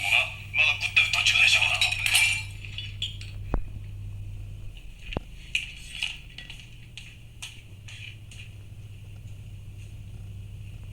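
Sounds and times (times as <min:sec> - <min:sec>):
steady low hum: 0:00.0 - 0:10.9
tableware clinking: 0:01.1 - 0:03.4.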